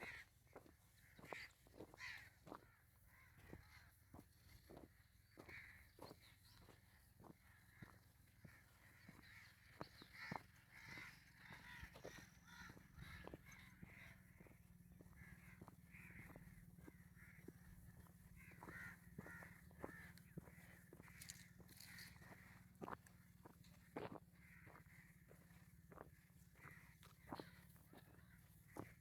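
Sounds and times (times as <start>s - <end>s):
faint crows cawing: 0.0s - 29.0s
soft footsteps on path: 0.0s - 29.0s.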